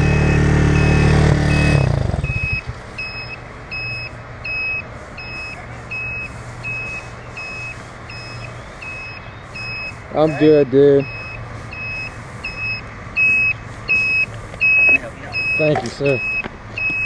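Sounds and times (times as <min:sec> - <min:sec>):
motorcycle engine stalling: 0:00.0 - 0:02.7
short high electronic beep: 0:00.0 - 0:17.0.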